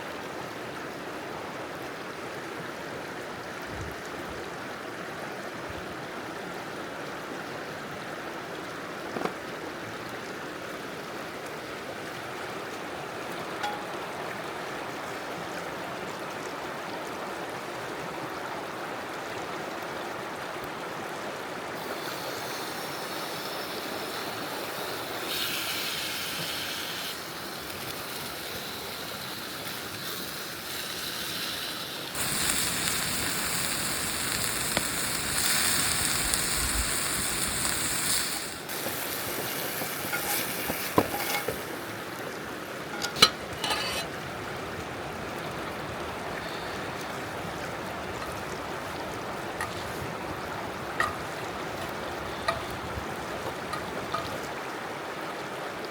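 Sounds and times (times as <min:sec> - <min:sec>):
bright hiss: 0:21.8 - 0:42.2
river rushing: 0:37.3 - 0:55.9.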